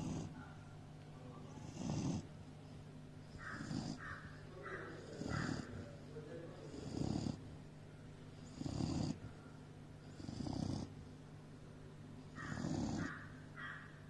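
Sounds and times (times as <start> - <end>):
dog snoring: 0.0 - 0.4, 1.5 - 2.3, 3.2 - 6.0, 6.6 - 7.5, 8.4 - 9.3, 10.0 - 11.0, 12.3 - 13.2.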